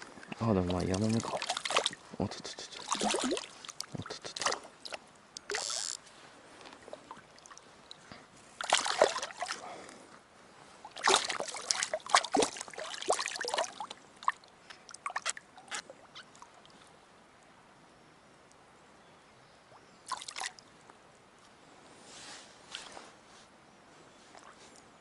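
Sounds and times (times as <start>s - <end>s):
water drips: 0.2s - 6.0s, 10.8s - 16.8s, 19.7s - 20.7s
fish splashing in water: 0.7s - 6.0s, 8.6s - 9.6s, 10.9s - 16.3s, 20.1s - 20.6s.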